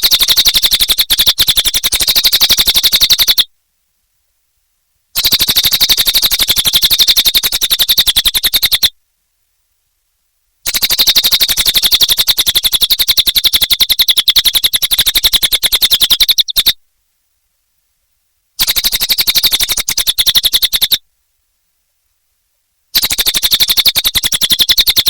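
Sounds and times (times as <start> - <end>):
bird singing high trill: 0.0 - 3.5, 10.7 - 16.8, 18.6 - 21.0.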